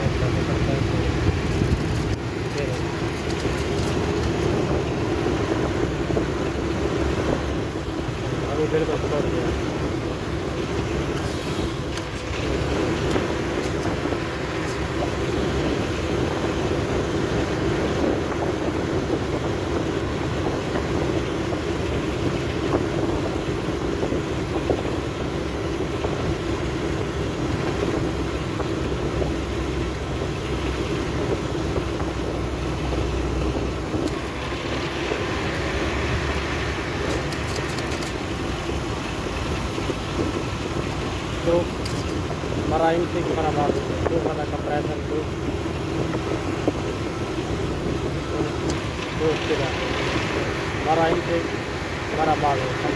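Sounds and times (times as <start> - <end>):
car engine idling: 0.0 - 52.9
compressor clutch engaging: 33.9 - 38.4, 41.6 - 42.2, 48.4 - 52.1.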